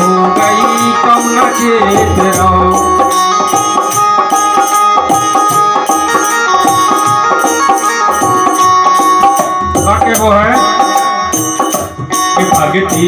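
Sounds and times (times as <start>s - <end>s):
hand drum rhythm: 0.0s - 13.0s
melody instrument long notes: 0.0s - 13.0s.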